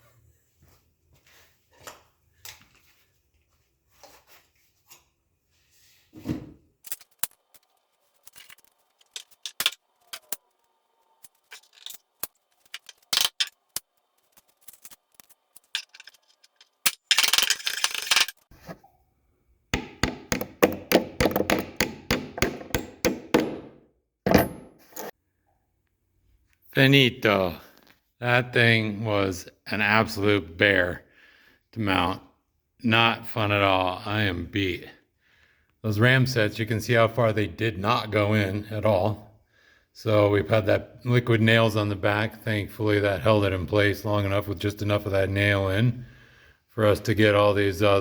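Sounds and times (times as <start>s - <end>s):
tool knocks and clatter: 19.8s - 24.9s.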